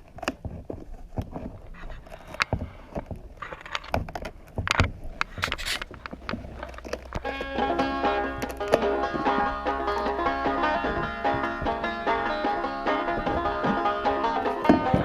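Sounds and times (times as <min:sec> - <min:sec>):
fiberglass shell knocks and cracks: 0:00.0 - 0:07.6
crackling scrapes of shell prying: 0:00.0 - 0:10.1.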